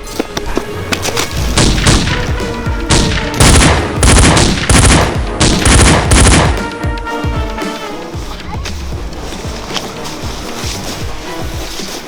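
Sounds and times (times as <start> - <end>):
background music: 0.0 - 12.0
gunfire volleys: 1.6 - 6.8.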